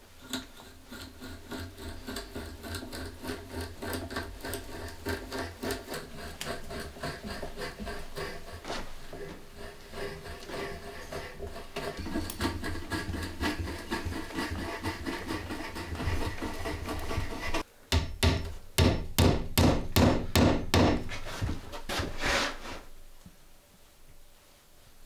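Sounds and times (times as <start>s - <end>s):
loud sharp knocks: 17.9s - 21.0s.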